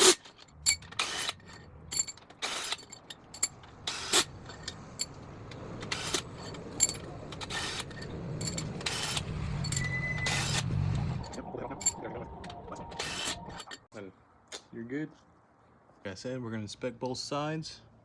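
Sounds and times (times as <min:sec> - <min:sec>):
low rumble: 0:03.3 - 0:13.6.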